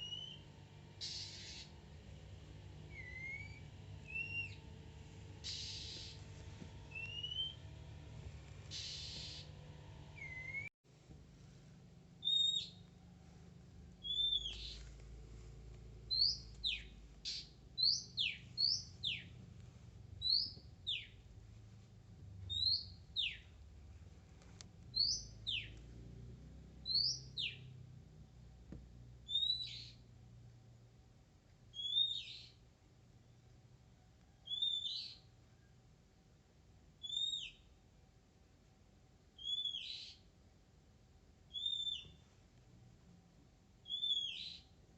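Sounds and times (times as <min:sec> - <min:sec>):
bird whistling song: 0:00.0 - 0:00.4, 0:01.0 - 0:01.7, 0:02.9 - 0:04.6, 0:05.4 - 0:06.2, 0:06.9 - 0:07.6, 0:08.7 - 0:09.5, 0:10.2 - 0:10.7, 0:12.2 - 0:12.9, 0:14.0 - 0:14.8, 0:16.1 - 0:19.3, 0:20.2 - 0:21.2, 0:22.5 - 0:23.5, 0:24.9 - 0:25.8, 0:26.9 - 0:27.7, 0:29.3 - 0:30.0, 0:31.7 - 0:32.6, 0:34.4 - 0:35.2, 0:37.0 - 0:37.7, 0:39.4 - 0:40.2, 0:41.5 - 0:42.2, 0:43.8 - 0:44.7.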